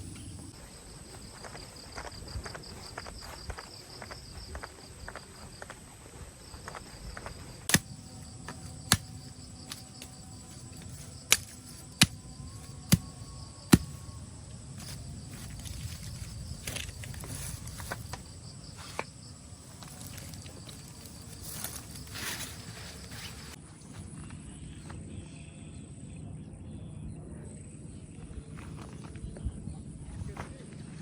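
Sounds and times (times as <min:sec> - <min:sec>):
insects chirring: 0:00.0 - 0:23.6
sharp knocks: 0:07.7 - 0:10.1.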